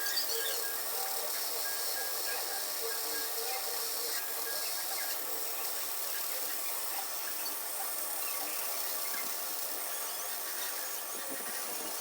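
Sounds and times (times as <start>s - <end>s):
toy lathe motor whirring: 7.9s - 12.0s.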